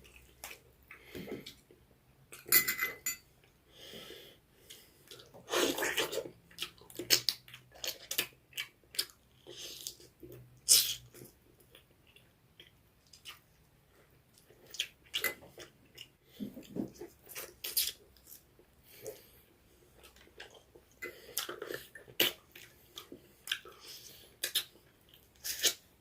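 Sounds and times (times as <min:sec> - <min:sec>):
person chewing food: 0:00.0 - 0:02.5, 0:04.6 - 0:25.9.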